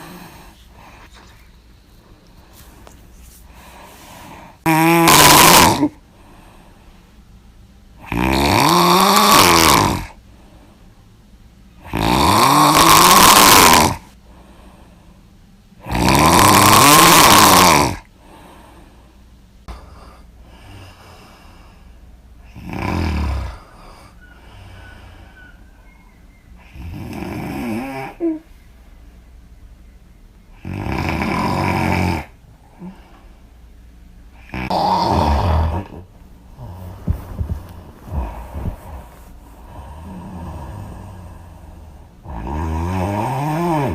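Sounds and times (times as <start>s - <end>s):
person snoring loudly: 4.2s - 6.0s, 8.0s - 10.2s, 11.8s - 14.1s, 15.8s - 18.1s, 22.5s - 23.9s, 26.6s - 28.4s, 30.6s - 33.0s, 34.4s - 39.1s, 39.7s - 43.9s.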